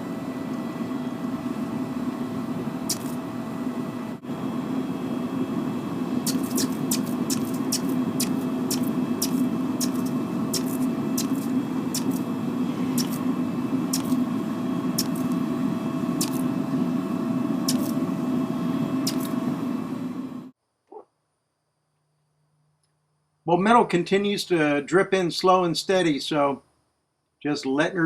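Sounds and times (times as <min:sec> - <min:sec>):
propane burner roaring: 0:00.0 - 0:20.6.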